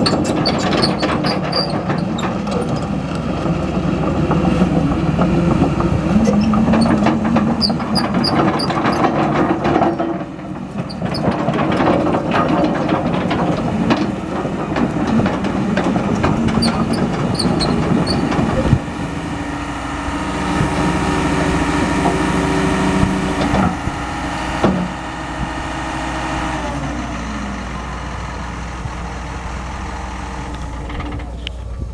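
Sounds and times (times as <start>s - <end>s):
excavator diesel engine running: 0.0s - 31.9s
steady whine: 13.1s - 31.9s.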